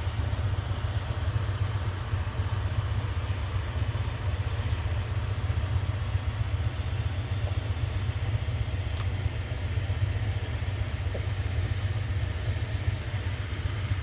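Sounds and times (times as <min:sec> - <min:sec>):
coolers running with low roar: 0:00.0 - 0:14.0.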